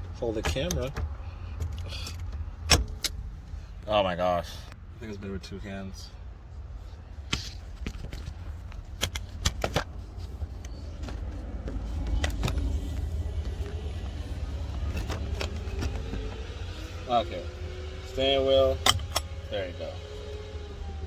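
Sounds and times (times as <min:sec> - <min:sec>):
steady low rumble: 0:00.0 - 0:21.0
steering wheel clicks and knocks: 0:00.2 - 0:03.2, 0:07.4 - 0:16.7.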